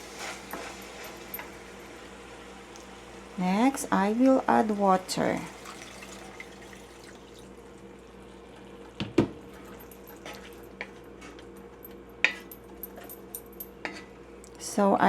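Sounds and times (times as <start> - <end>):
water pouring into pan: 5.3 - 7.6
light clinks: 9.5 - 14.0.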